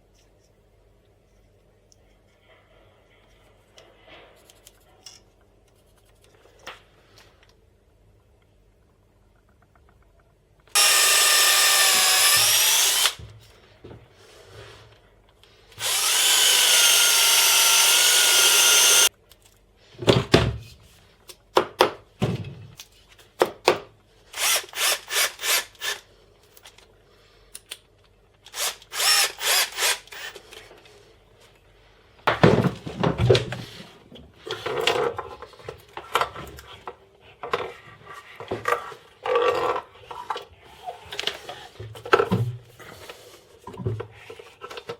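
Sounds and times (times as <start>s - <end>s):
drill trigger pulses: 10.8s - 13.2s, 15.8s - 19.1s, 28.6s - 30.3s
power drill whining: 10.8s - 13.2s, 15.8s - 19.1s, 24.4s - 26.0s, 28.5s - 30.4s.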